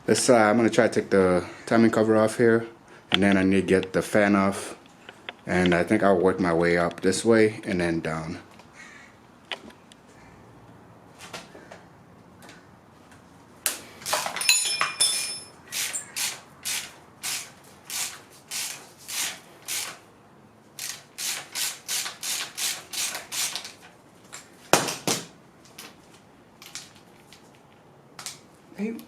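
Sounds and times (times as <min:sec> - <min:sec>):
metal tool ringing: 0:14.4 - 0:15.6.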